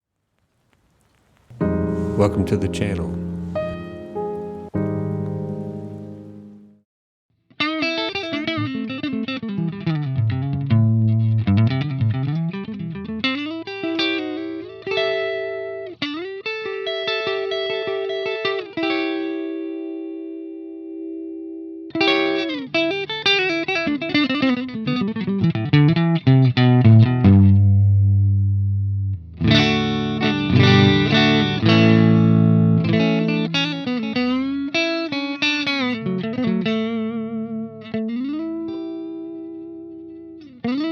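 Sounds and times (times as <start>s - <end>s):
overdriven electric guitar: 7.5s - 40.9s.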